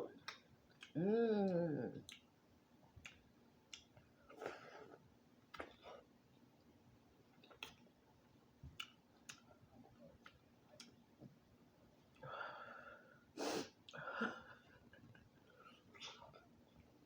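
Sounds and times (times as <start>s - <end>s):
mouth clicks and smacks: 0.2s - 2.3s, 2.9s - 4.4s, 5.5s - 5.9s, 7.4s - 7.9s, 8.6s - 9.5s.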